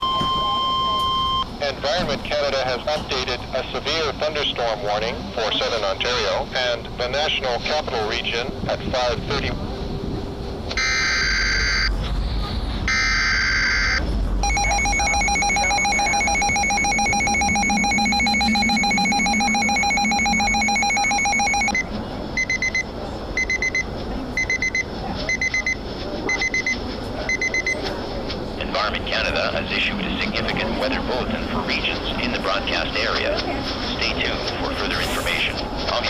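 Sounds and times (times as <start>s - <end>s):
pulsing two-tone attention signal: 0.0s - 1.5s, 12.9s - 22.8s
shrill data tone bursts: 12.9s - 21.8s
short high beeps: 12.9s - 22.8s.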